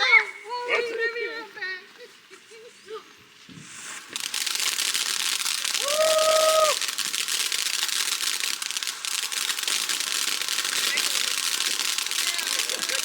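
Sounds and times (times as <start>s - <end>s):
firework hissing crackle: 0.0s - 13.0s
firework whistling tone: 3.3s - 13.0s.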